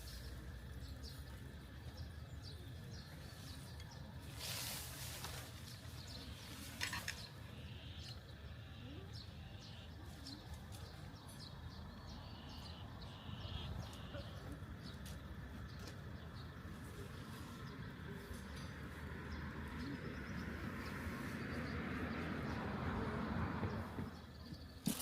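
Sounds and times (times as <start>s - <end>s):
small birds chirping: 0.0s - 25.0s.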